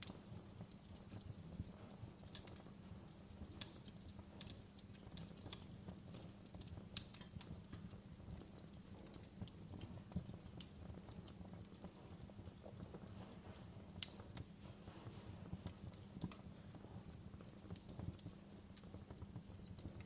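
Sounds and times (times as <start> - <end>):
fire crackling and popping: 0.0 - 20.0.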